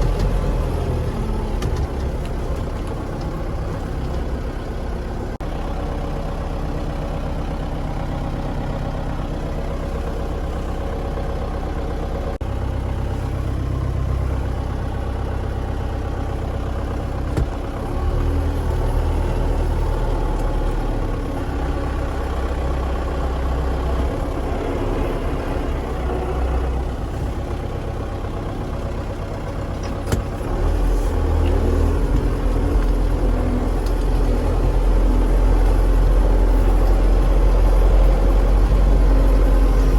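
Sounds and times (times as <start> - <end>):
farm vehicle engine running: 0.0 - 39.9.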